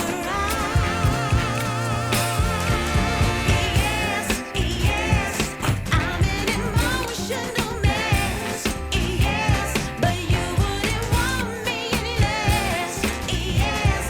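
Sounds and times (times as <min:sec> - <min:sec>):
pop song with female vocals: 0:00.0 - 0:14.0
steady drum beat: 0:00.0 - 0:14.0.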